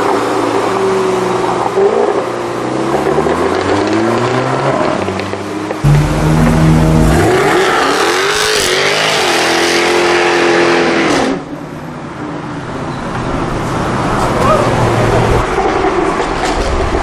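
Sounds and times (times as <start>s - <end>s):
car engine accelerating hard: 5.8s - 9.8s.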